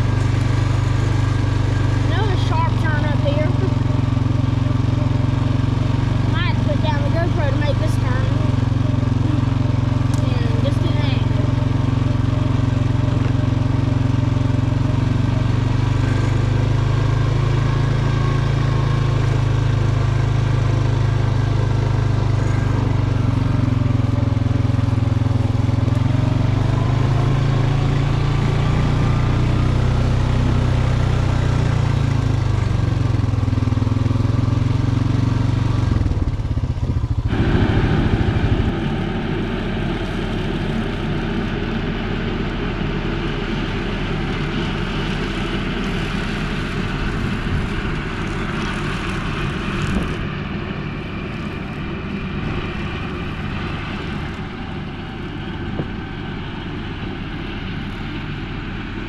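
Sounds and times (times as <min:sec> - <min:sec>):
quieter engine sound: 0:00.0 - 0:59.0
tractor diesel engine running: 0:00.0 - 0:59.0.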